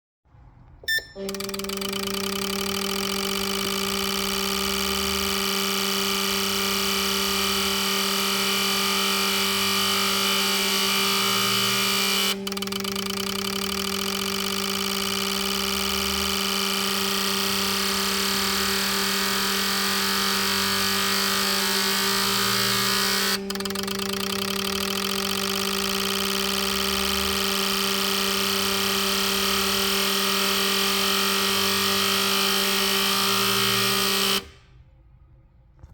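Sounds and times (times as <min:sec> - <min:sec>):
test bench hum: 0:00.7 - 0:35.0.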